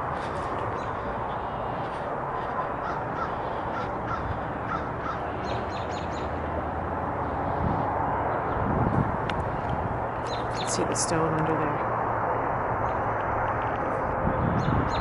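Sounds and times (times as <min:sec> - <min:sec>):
steady background rush: 0:00.0 - 0:15.0
crow cawing: 0:00.8 - 0:05.6.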